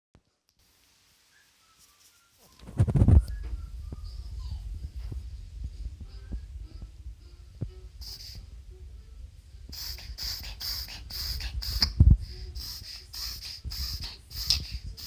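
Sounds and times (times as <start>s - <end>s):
dog raspy breathing: 9.7s - 15.0s.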